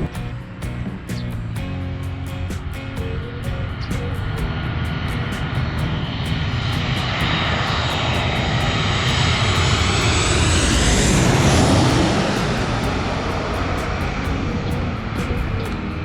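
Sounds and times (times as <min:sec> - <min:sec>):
airliner engines passing overhead: 0:00.0 - 0:16.0.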